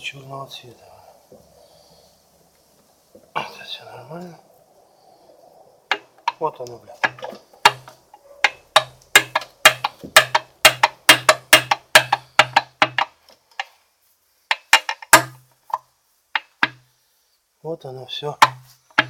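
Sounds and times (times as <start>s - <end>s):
knocks on metal engine parts: 7.0s - 13.1s, 14.5s - 15.4s, 16.4s - 16.8s, 18.4s - 19.0s.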